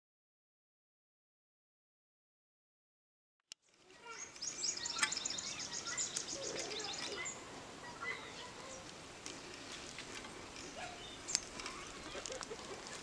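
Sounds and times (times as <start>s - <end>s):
birds chirping: 3.6s - 13.0s
bird trill: 4.0s - 8.8s, 10.5s - 12.6s.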